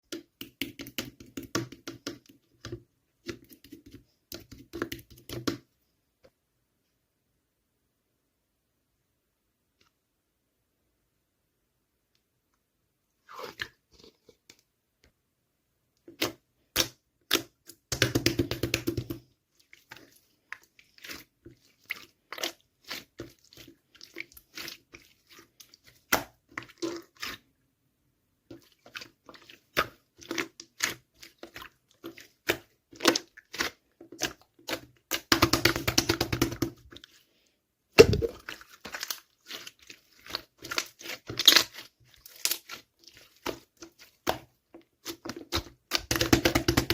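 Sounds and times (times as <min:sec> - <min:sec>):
slime squished by hand: 0:38.0 - 0:46.9.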